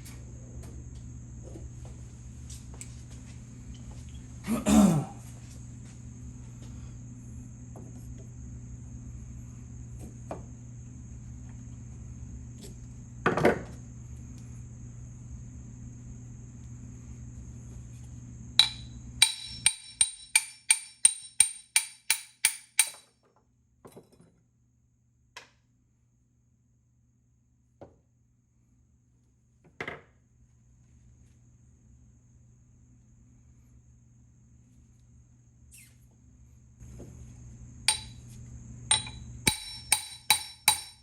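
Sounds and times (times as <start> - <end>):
steady low hum: 0.0 - 23.0, 30.2 - 41.0
hammer tapping on metal: 18.6 - 23.1, 37.9 - 41.0.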